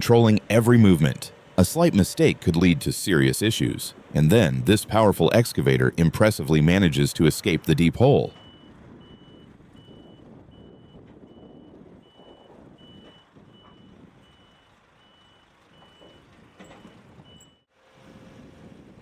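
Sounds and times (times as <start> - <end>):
low engine rumble: 0.0 - 19.0
backup alarm beeping: 7.4 - 17.6.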